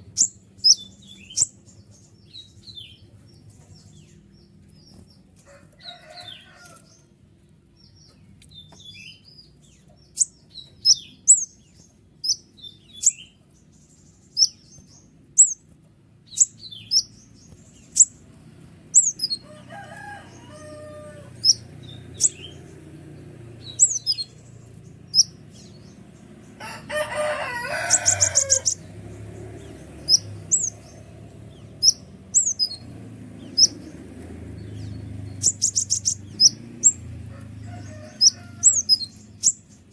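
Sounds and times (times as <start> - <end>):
sunbird chirping: 0.0 - 4.6, 8.1 - 39.9
rapid high bird trill: 14.2 - 15.7, 18.9 - 22.9, 23.6 - 26.0, 26.6 - 28.9, 29.6 - 31.0, 31.8 - 39.7.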